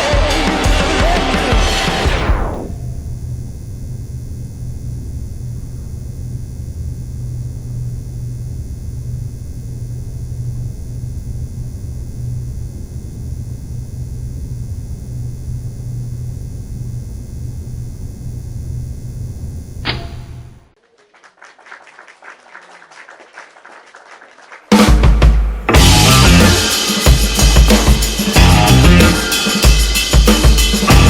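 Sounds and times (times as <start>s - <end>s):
deep low hum: 1.4s - 20.7s, 25.7s - 27.5s, 28.4s - 29.2s.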